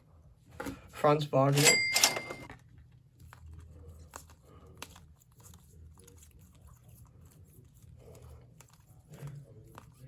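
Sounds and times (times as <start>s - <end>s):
trading cards shuffling: 1.6s - 10.0s.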